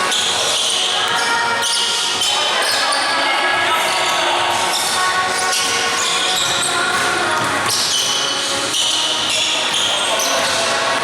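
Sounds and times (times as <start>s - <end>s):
basketball bouncing on court: 6.4s - 11.0s.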